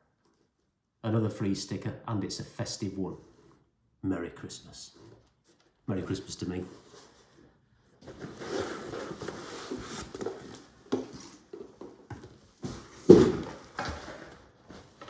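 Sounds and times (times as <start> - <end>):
packaging rustling: 8.0 - 15.0.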